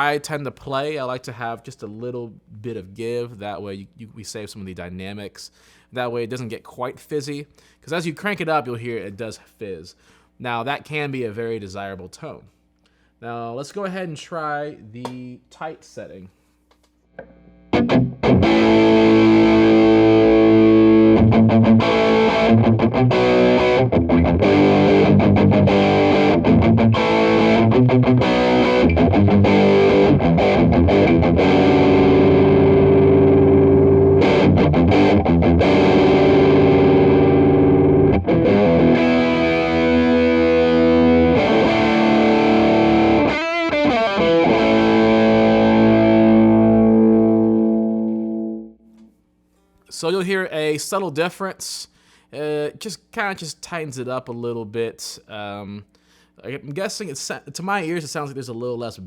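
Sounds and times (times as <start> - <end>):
distorted electric guitar riffs: 17.2 - 49.0
ringing guitar chords: 17.2 - 49.0.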